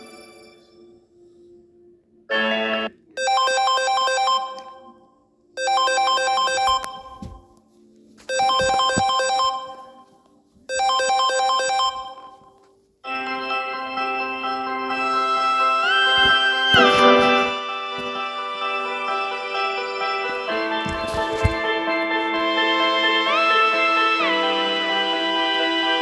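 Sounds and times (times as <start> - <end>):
electronic phone ringtone: 3.2 - 4.9, 5.6 - 7.1, 8.3 - 10.0, 10.7 - 12.4.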